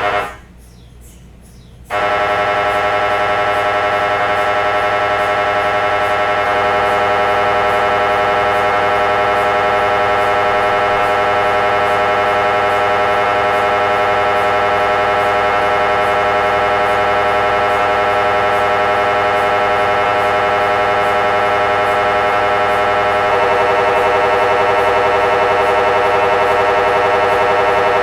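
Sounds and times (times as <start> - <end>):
mri scanner buzzing: 0.0 - 0.5, 1.9 - 28.0.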